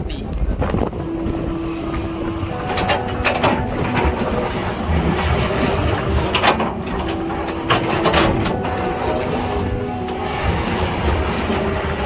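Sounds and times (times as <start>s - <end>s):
excavator diesel engine under load: 0.8s - 12.0s
bucket knocking and scraping rock: 2.5s - 12.0s.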